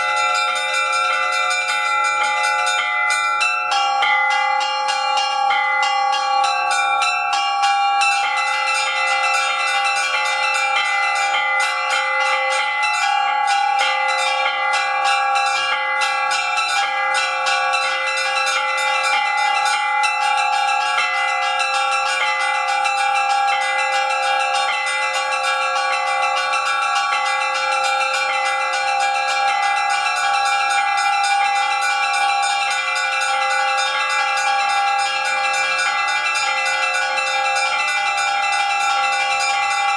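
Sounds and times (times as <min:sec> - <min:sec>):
large church bells ringing: 0:00.0 - 0:39.9
small bells struck rapidly: 0:00.0 - 0:39.9.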